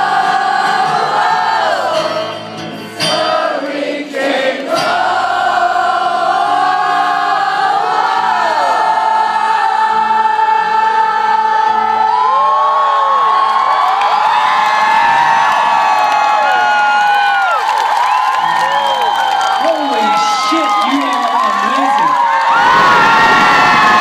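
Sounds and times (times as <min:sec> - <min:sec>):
crowd singing wordless melody: 0:00.0 - 0:12.5
live rock music: 0:01.9 - 0:03.4.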